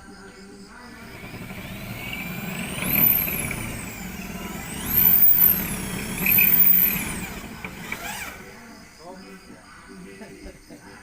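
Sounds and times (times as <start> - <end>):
power tool motor whining: 0.9 - 9.1.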